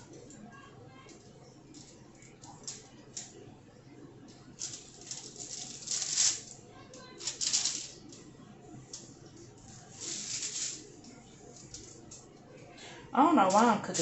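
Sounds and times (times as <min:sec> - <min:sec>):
rustling and scraping handling noises: 0:04.6 - 0:08.3, 0:08.9 - 0:12.4.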